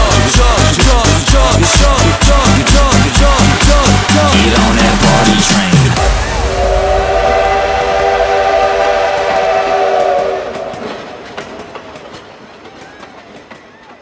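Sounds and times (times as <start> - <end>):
train whistle chord: 5.2 - 12.1.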